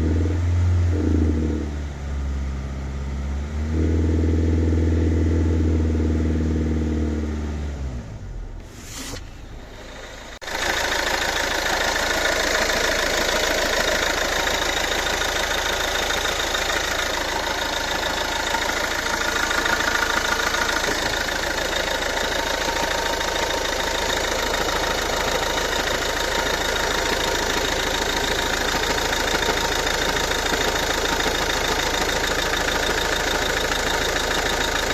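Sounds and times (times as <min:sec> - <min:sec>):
diesel engine idling: 0:09.3 - 0:34.9.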